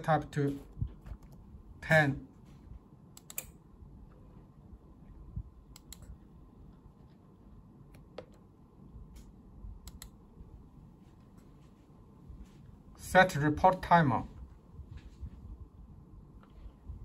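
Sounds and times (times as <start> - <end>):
computer mouse clicks: 1.0 - 1.4, 3.2 - 3.6, 5.7 - 6.2, 7.9 - 8.4, 9.1 - 10.2.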